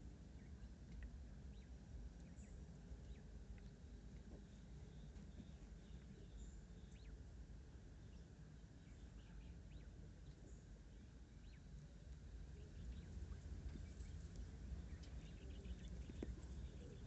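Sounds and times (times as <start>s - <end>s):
low steady hum: 0.0s - 17.0s
quail chirping: 12.5s - 17.0s.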